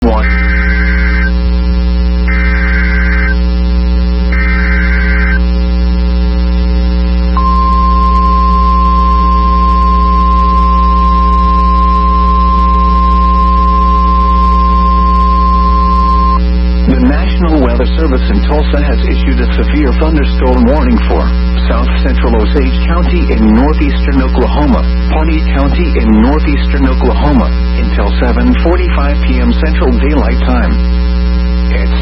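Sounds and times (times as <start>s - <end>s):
low electrical hum: 0.0s - 32.0s
screechy digital data bursts: 0.1s - 1.3s, 2.3s - 3.4s, 4.3s - 5.4s, 7.4s - 16.4s
steady warning alarm tone: 2.3s - 3.4s, 4.3s - 5.4s, 7.4s - 16.4s.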